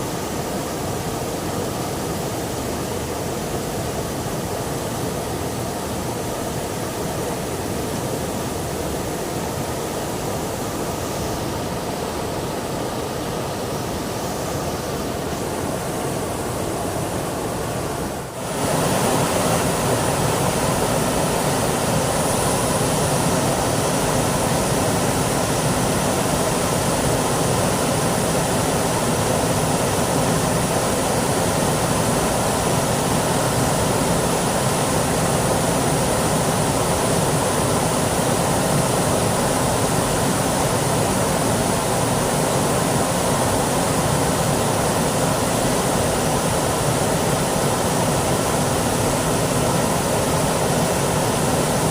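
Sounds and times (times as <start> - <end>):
flowing water rushing: 0.0 - 51.9.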